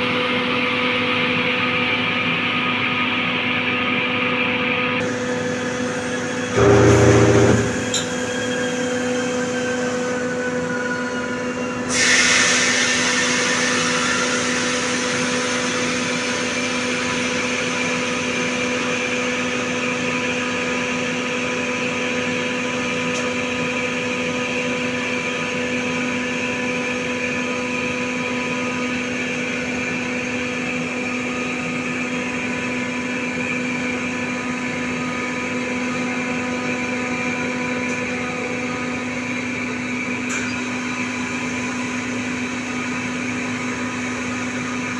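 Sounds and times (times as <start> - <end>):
air hissing: 5.0 - 8.1
compressor motor hum and whine: 5.0 - 9.0.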